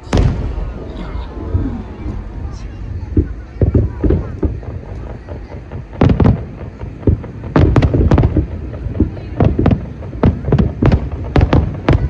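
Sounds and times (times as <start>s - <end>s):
fireworks shells bursting: 0.0s - 6.3s.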